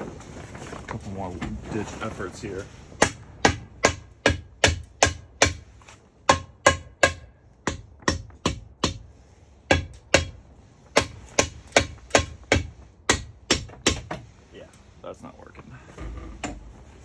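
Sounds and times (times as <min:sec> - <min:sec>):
hammer blows on metal: 0:03.0 - 0:14.3.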